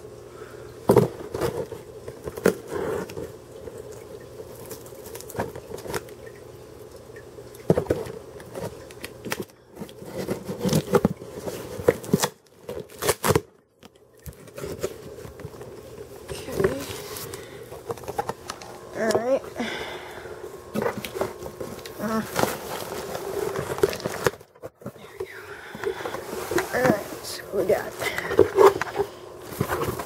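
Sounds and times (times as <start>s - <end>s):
faint steady hum: 0.0s - 30.0s
packaging crinkling and tearing: 0.9s - 6.3s, 7.8s - 18.8s, 20.8s - 24.9s
cardboard package handled: 7.7s - 13.5s, 14.2s - 19.3s, 20.7s - 30.0s.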